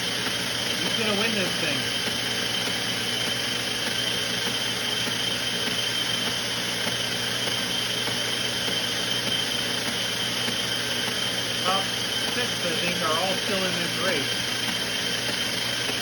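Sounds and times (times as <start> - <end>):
treadmill motor and belt: 0.0 - 16.0
high whine: 10.4 - 16.0.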